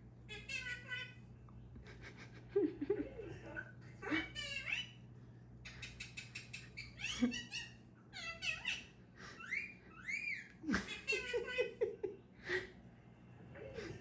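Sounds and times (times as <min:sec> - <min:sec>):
parrot chattering and squawking: 0:00.3 - 0:01.2, 0:03.5 - 0:05.0, 0:05.6 - 0:11.8.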